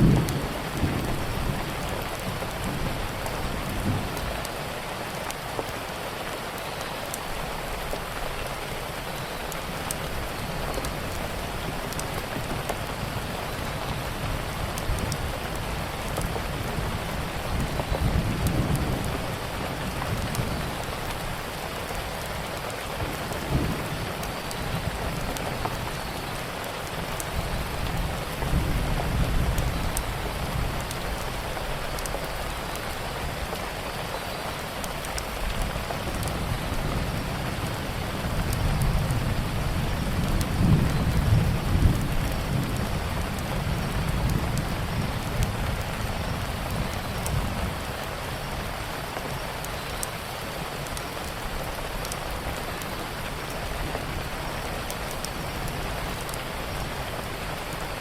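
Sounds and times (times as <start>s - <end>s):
thunder rumbling: 0.0s - 4.5s, 36.0s - 48.7s
heavy rain hissing: 0.0s - 58.0s.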